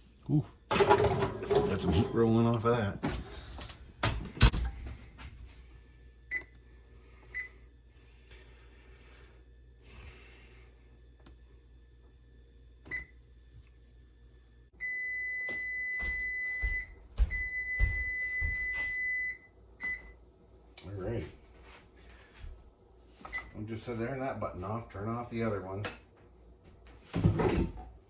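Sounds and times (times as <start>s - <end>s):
oven beeper high tone: 14.7s - 20.2s.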